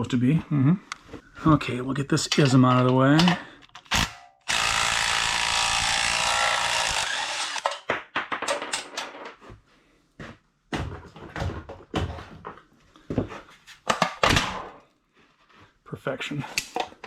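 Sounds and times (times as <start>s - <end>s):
power tool running: 4.5s - 7.6s.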